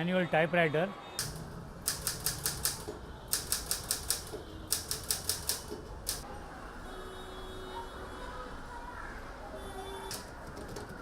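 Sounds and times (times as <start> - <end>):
typewriter keys striking: 1.2 - 6.2.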